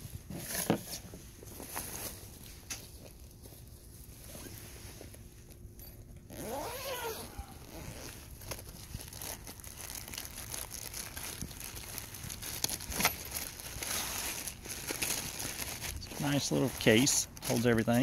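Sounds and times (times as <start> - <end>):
packaging rustling and crinkling: 6.3 - 18.0.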